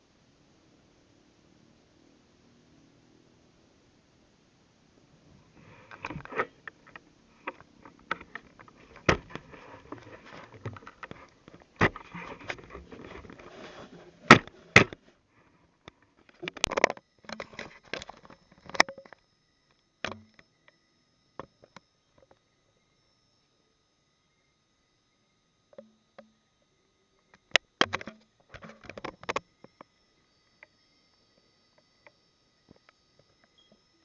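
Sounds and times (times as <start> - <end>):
rustling: 5.4 - 18.8
sharp clicks and knocks: 5.8 - 13.5, 14.2 - 15.0, 15.8 - 19.2, 27.3 - 29.4.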